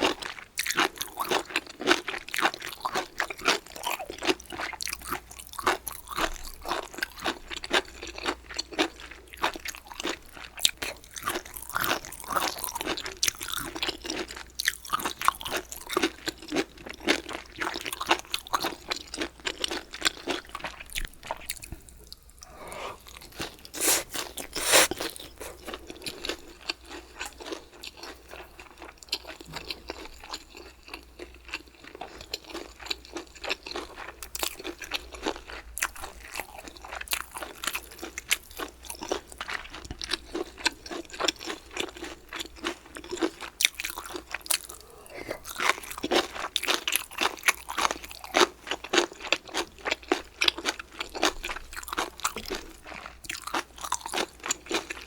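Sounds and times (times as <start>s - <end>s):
chewing crunchy food: 0.0s - 55.0s
loud bite: 22.4s - 25.8s.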